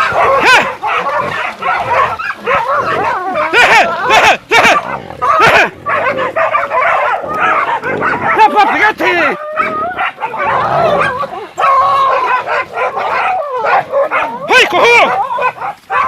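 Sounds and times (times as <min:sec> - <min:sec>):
dogs barking and yelping: 0:00.0 - 0:16.0.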